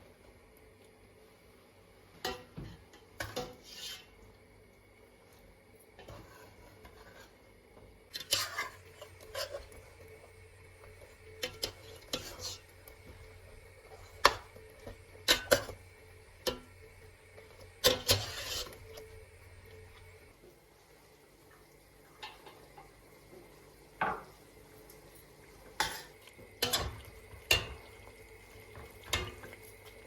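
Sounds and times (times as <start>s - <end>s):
dishes and utensils clinking: 25.8s - 28.0s.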